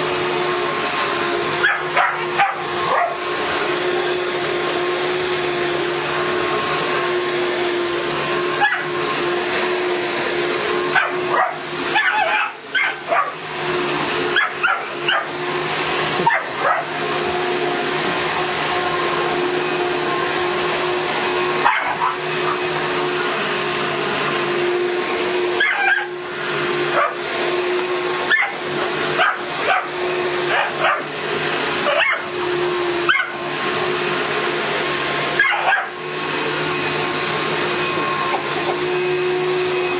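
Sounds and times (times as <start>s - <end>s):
vacuum cleaner running: 0.0s - 39.9s
dog barking and yipping: 1.6s - 3.2s, 8.6s - 9.0s, 10.9s - 13.5s, 14.3s - 15.4s, 16.1s - 17.0s, 21.6s - 22.7s, 25.6s - 26.2s, 26.8s - 27.3s, 28.2s - 31.2s, 31.8s - 32.3s, 33.0s - 33.4s, 35.3s - 36.0s.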